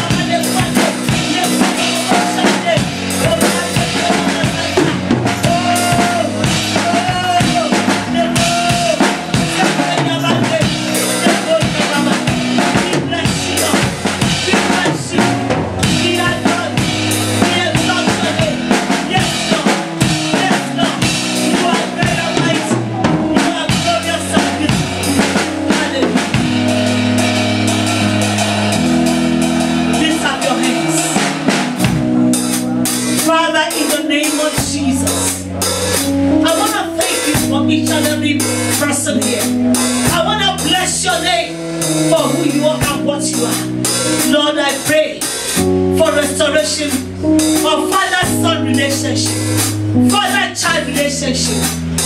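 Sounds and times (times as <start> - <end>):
drum kit beat: 0.0 - 52.0
worship band music: 0.0 - 52.0.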